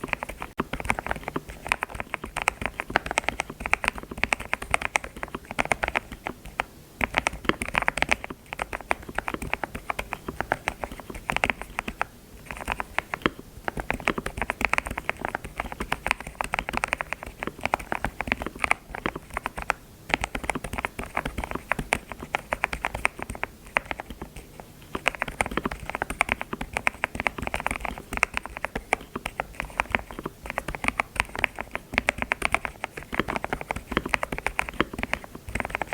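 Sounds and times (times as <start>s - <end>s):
keyboard typing clicks: 0.0s - 35.9s.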